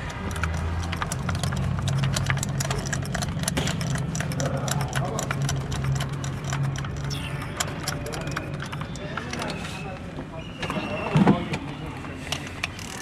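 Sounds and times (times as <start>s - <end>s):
rapid ticking clatter: 0.0s - 9.4s
car engine humming: 0.0s - 10.2s.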